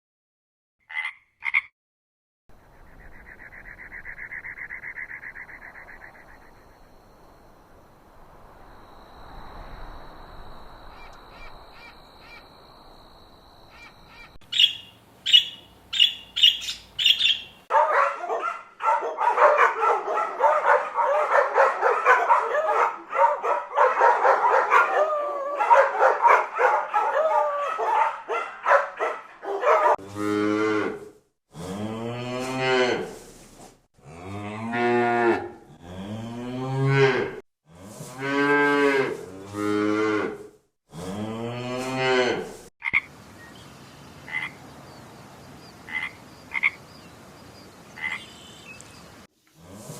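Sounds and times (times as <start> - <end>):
chorus of overlapping animal calls: 10.9 - 12.5, 44.3 - 44.6, 45.9 - 46.8, 48.0 - 48.5.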